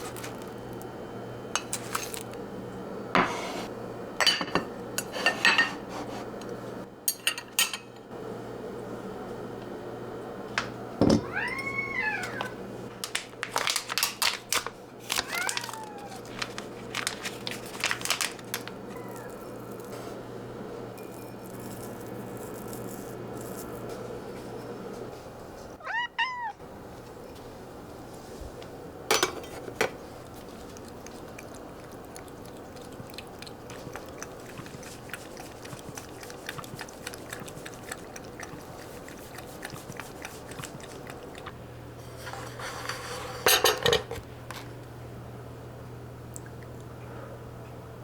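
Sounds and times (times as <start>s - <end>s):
cat meowing: 11.2s - 12.6s, 15.2s - 16.3s, 18.9s - 19.4s, 25.8s - 26.6s
steady low hum: 16.3s - 48.0s.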